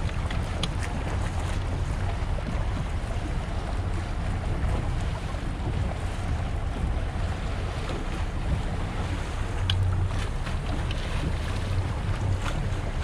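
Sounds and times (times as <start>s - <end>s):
boat engine drone: 0.0s - 13.0s
water wash: 0.0s - 13.0s
wind buffeting microphone: 0.0s - 13.0s
faint ticks: 9.6s - 9.9s.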